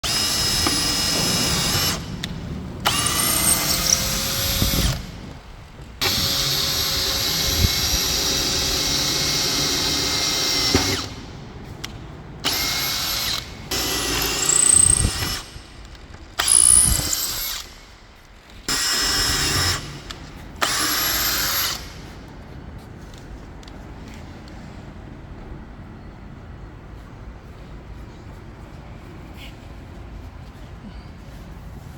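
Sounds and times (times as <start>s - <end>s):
cordless hammer drill whining: 0.0s - 5.3s, 6.0s - 11.3s, 12.4s - 15.6s, 16.4s - 17.8s, 18.7s - 22.0s.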